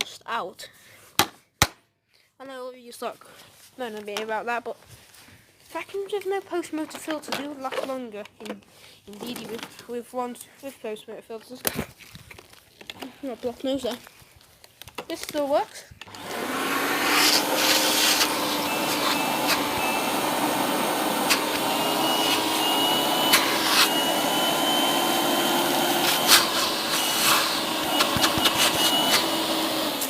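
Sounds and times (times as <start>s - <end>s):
vacuum cleaner running: 16.0s - 30.0s
vacuum motor winding down: 16.0s - 30.0s.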